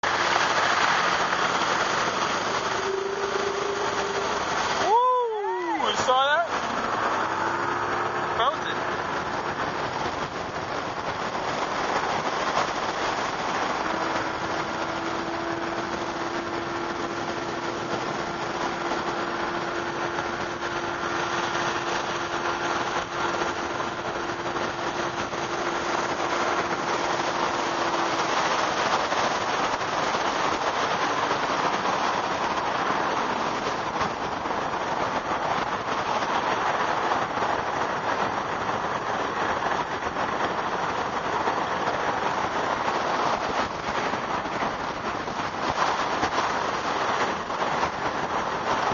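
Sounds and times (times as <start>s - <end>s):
heavy rain hissing: 0.0s - 48.9s
steady humming tone: 1.1s - 32.6s.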